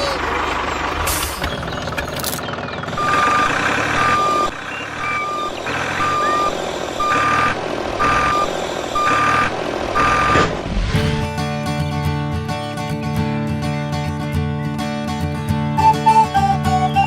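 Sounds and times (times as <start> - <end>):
vehicle reversing alarm beeping: 2.8 - 10.5.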